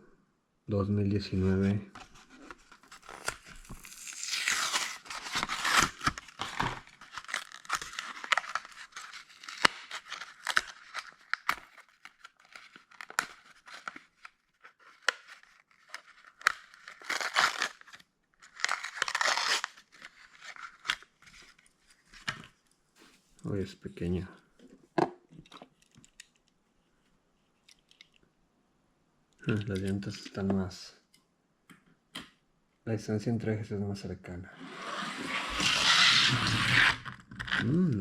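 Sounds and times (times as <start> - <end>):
blister pack tearing and crinkling: 2.0 - 22.4, 35.0 - 38.0.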